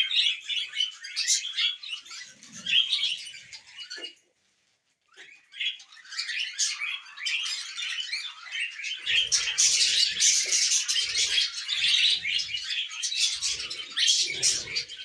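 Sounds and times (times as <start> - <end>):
budgerigars chirping: 5.1 - 15.0.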